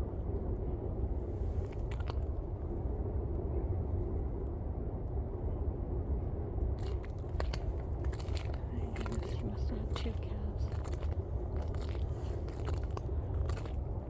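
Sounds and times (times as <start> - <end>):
wind rumble on microphone: 0.0 - 14.0
footsteps crunching on icy snow: 7.2 - 13.8.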